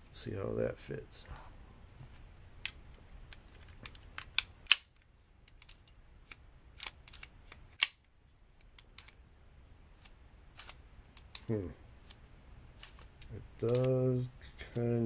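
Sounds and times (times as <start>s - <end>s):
pistol parts clicking: 2.6s - 9.2s, 10.0s - 11.5s, 12.8s - 14.0s.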